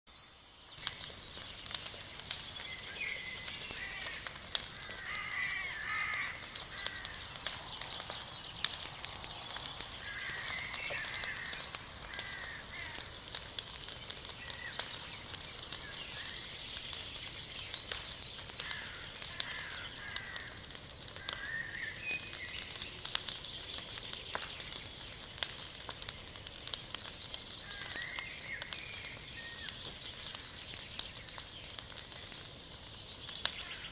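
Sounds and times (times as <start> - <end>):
birds chirping: 0.1 - 33.9
wood fire crackling and popping: 0.8 - 33.9.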